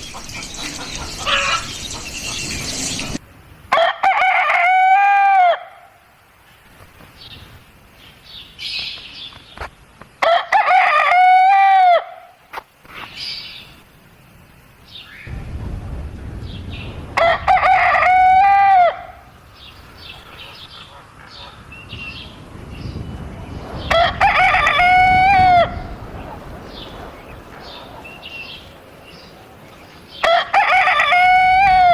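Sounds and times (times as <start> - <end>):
soft clucks and chirps: 0.0 - 3.9
rooster crowing: 0.0 - 6.0, 10.2 - 12.3, 17.2 - 19.4, 23.8 - 26.1, 30.2 - 31.9.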